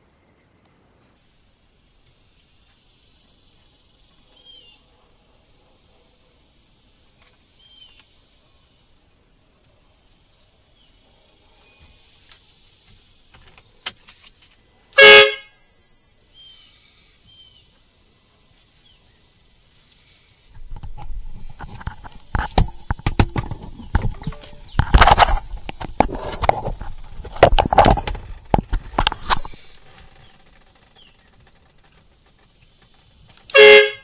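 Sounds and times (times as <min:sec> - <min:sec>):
air horn blast: 0:15.0 - 0:15.5, 0:33.5 - 0:34.0
knocking and rumbling handling noises: 0:20.6 - 0:32.5.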